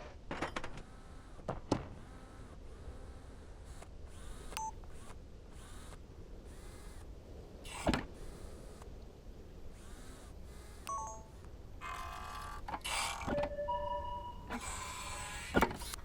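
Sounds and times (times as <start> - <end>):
low steady hum: 0.3 - 16.0
buzzing mechanical whir: 0.4 - 16.0
short electronic chirps: 13.4 - 14.5.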